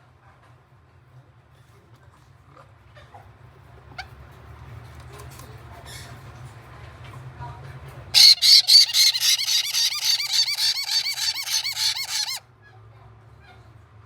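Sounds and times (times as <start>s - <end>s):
chick begging squeaks: 8.2s - 12.4s.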